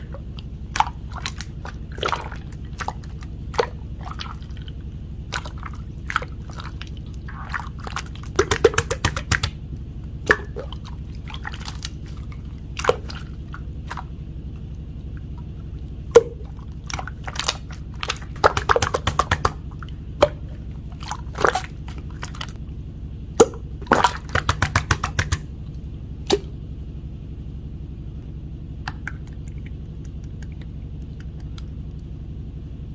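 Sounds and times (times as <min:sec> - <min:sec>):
steady low hum: 0:00.0 - 0:32.9
slime sticky pops and crackling: 0:07.9 - 0:09.6, 0:16.2 - 0:19.6.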